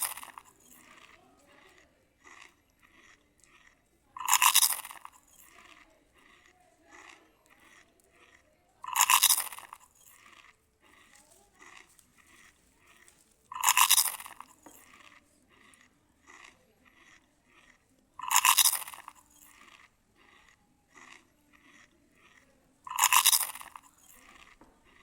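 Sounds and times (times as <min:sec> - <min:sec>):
crunching crisp food: 0:00.0 - 0:25.0
wet chewing: 0:00.0 - 0:25.0.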